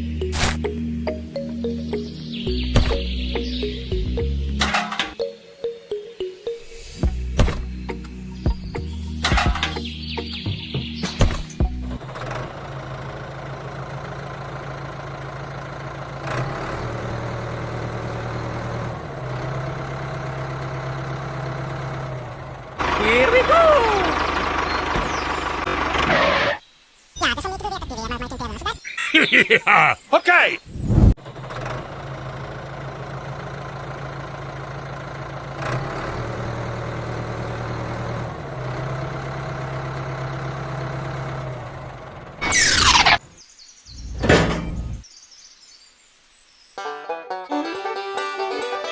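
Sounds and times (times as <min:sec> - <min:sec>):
brief rattle: 0:44.1 - 0:45.0.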